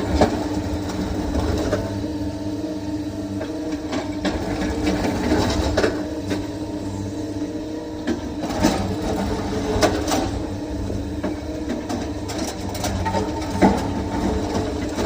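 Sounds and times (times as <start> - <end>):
excavator diesel engine running: 0.0 - 15.0.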